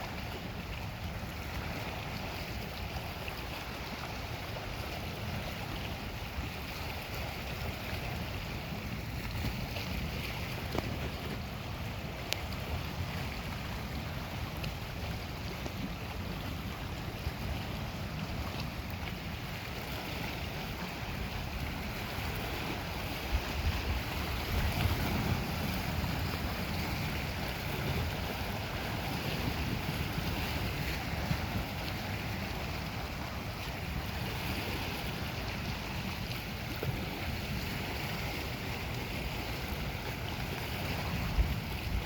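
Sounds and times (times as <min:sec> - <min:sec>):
waves washing on shore: 0:00.0 - 0:42.0
wind buffeting microphone: 0:00.0 - 0:42.0.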